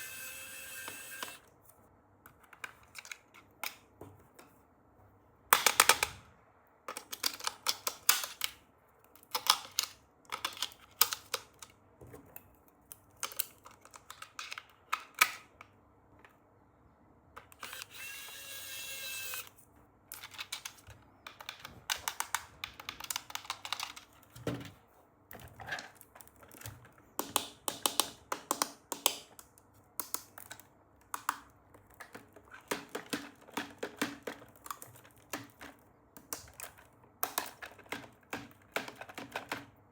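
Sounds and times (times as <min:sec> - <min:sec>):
clicks and taps: 0:26.5 - 0:39.7.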